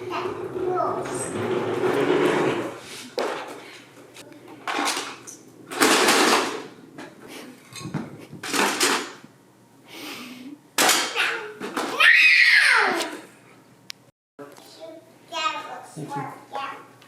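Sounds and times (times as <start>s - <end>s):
hard parts clattering: 4.6s - 9.2s.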